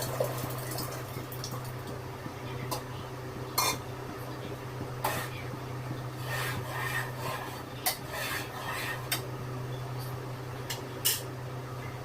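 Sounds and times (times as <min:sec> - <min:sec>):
steady low hum: 0:00.0 - 0:12.0
metal spoon scraping a pot: 0:05.0 - 0:05.4, 0:06.1 - 0:09.2.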